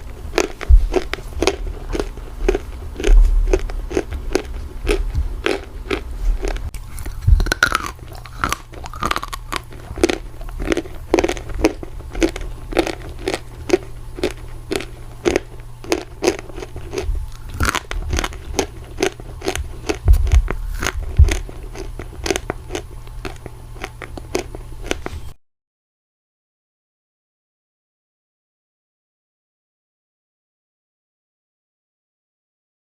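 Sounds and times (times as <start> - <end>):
clay crunching being chewed: 0.0 - 25.3.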